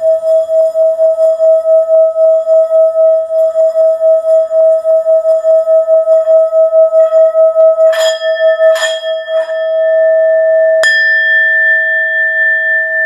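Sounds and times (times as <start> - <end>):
singing bowl ringing: 0.0 - 13.0
singing bowl strike: 5.4 - 13.0.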